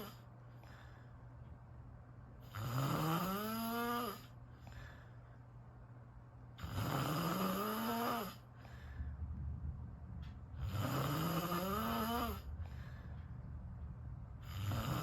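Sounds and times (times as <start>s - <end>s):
person snoring: 0.0s - 0.2s, 2.5s - 4.3s, 6.6s - 8.4s, 10.6s - 12.5s, 14.4s - 15.0s.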